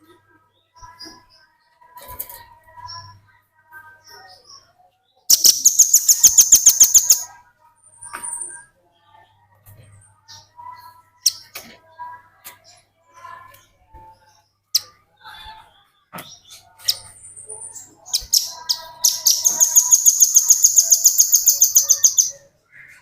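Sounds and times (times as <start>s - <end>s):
bird chirping: 5.3s - 7.3s, 16.3s - 23.0s
bird fast trill: 5.3s - 7.3s, 17.7s - 22.4s.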